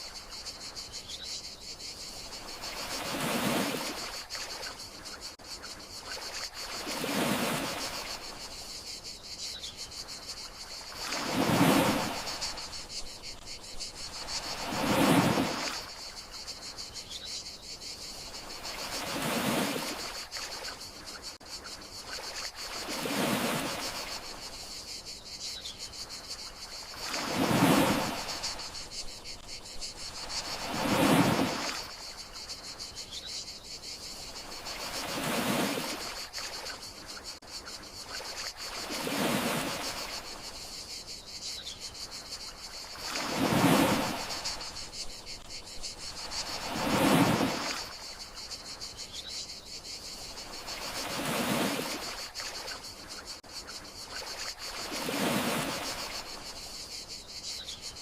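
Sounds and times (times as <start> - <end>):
crickets chirring: 0.0 - 58.0
sea waves washing in: 2.3 - 4.7, 6.2 - 8.5, 10.8 - 12.9, 13.9 - 16.1, 18.2 - 20.6, 22.1 - 24.5, 26.8 - 32.4, 34.4 - 36.8, 38.2 - 40.5, 42.8 - 45.0, 46.0 - 48.4, 50.5 - 52.8, 54.2 - 56.7.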